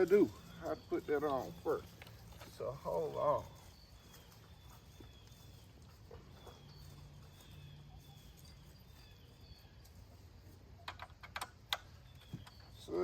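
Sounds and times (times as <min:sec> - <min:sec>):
high bird chirps: 0:11.8 - 0:13.0.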